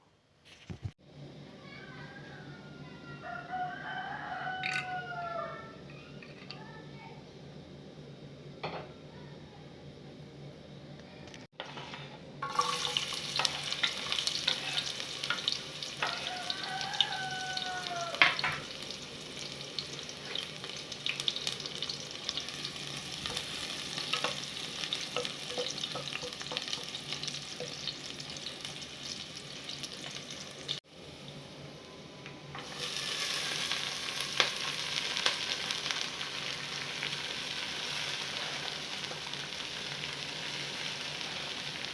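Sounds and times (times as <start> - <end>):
spoon scraping pan: 11.6 - 16.4
food sizzling in oil: 11.6 - 31.6, 32.5 - 41.9.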